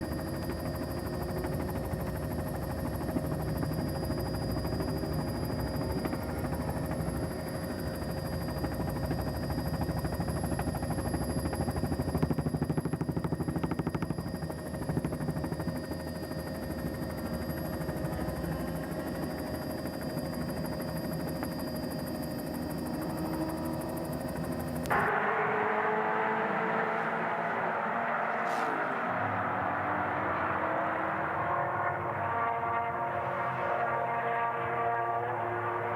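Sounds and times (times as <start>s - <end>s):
race car engine running hard: 24.8s - 35.9s.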